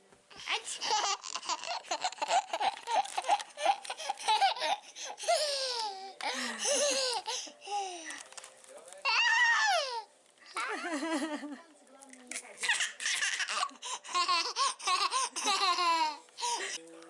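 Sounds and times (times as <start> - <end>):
toddler laughing: 0.4 - 7.4, 12.6 - 16.6.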